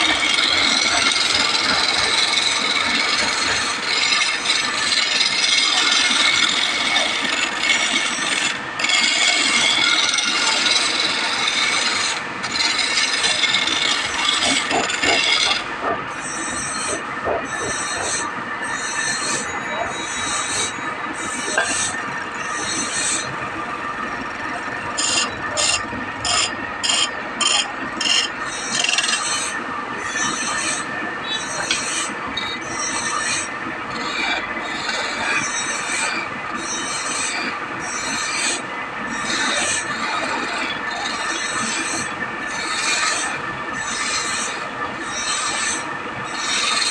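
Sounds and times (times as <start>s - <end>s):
rasp scraping wood: 0.0s - 18.2s.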